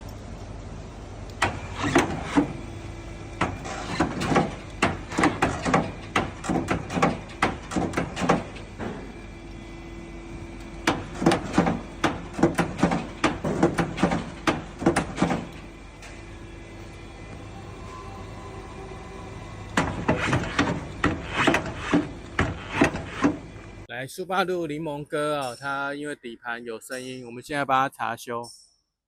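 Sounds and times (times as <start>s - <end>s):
car chassis clunking: 3.4s - 9.2s, 10.8s - 16.2s.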